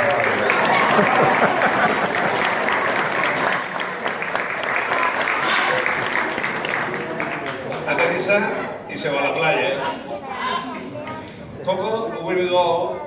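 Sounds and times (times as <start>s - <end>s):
audience applauding: 0.0s - 8.3s.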